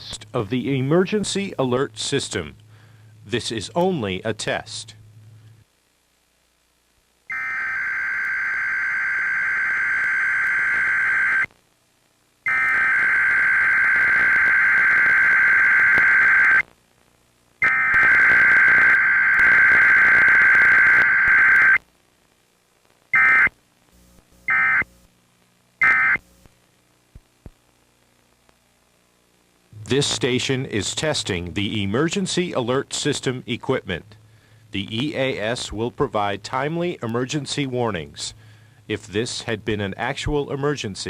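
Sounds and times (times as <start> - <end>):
buzzy warbling data tones: 7.3 - 11.5.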